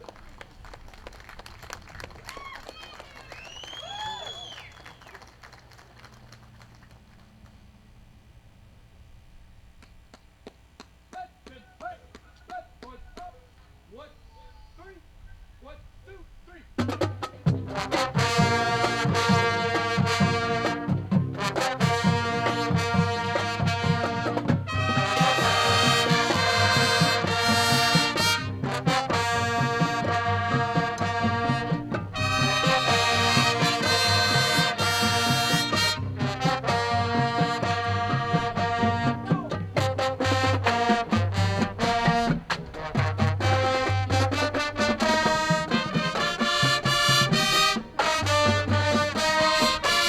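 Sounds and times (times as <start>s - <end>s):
marching band brass: 0.0s - 10.2s, 11.2s - 50.0s
drumline beat: 16.6s - 50.0s.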